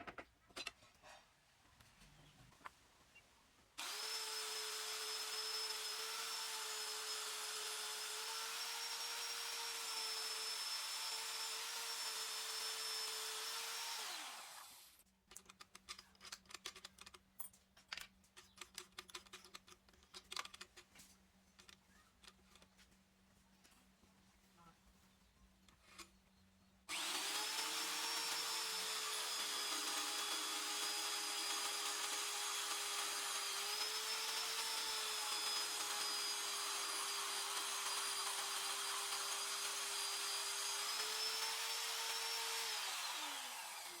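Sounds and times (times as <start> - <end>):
electric power tool running: 3.8 - 15.0, 26.9 - 44.0
metal handling clicks and knocks: 15.2 - 22.8.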